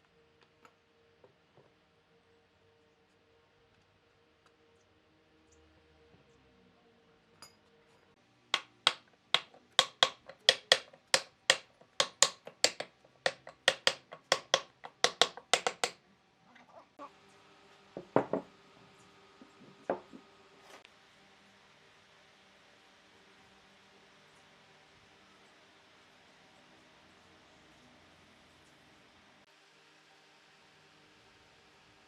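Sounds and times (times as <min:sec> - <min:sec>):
hammer strikes: 0:08.6 - 0:16.0
heavy knocks: 0:08.6 - 0:16.0, 0:18.0 - 0:18.5.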